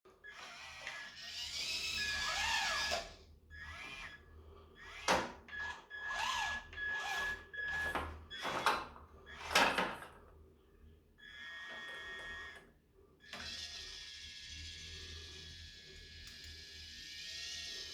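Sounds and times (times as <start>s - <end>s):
small electric motors whining: 0.2s - 4.2s, 4.8s - 8.0s, 13.3s - 17.9s.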